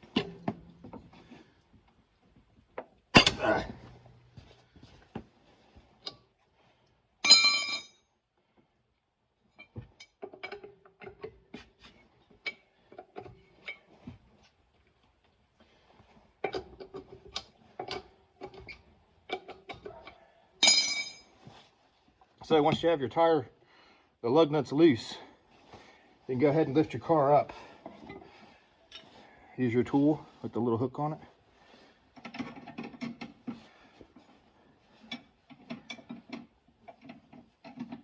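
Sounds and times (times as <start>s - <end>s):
metallic clink ringing: 7.2s - 8.0s, 20.6s - 21.3s.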